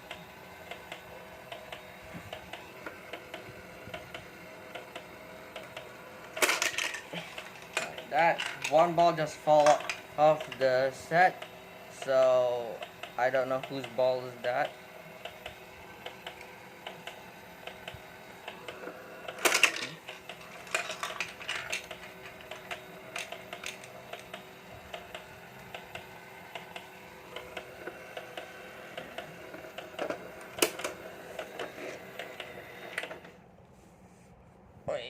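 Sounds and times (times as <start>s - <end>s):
small toy motor humming: 0.0s - 33.4s
plastic balls rattling on track: 6.4s - 10.6s, 19.4s - 22.3s
sharp plastic clacks: 15.4s - 27.7s.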